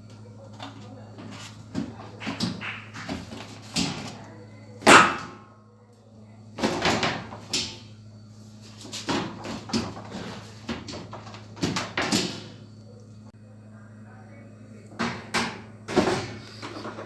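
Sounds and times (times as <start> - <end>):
steady low hum: 0.0 - 17.0
hard knocks and clatters: 1.2 - 4.2, 8.8 - 12.6.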